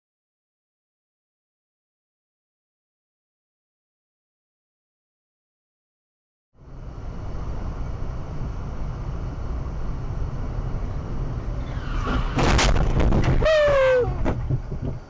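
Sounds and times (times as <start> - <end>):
car driving rumble: 6.6 - 15.0
car crash impacts: 11.6 - 15.0.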